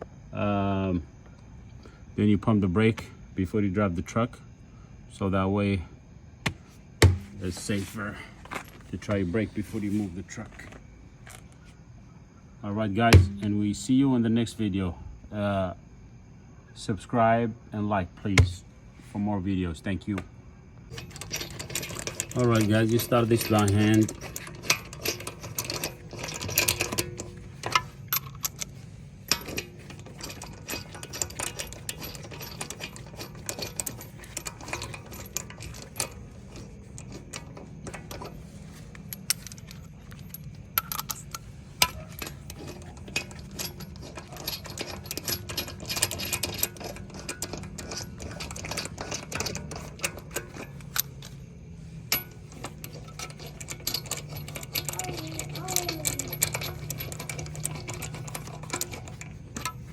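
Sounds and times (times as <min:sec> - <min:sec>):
low steady hum: 0:00.0 - 0:59.9
lug nuts clinking on studs: 0:06.4 - 0:09.2, 0:13.0 - 0:13.9, 0:20.8 - 0:59.9.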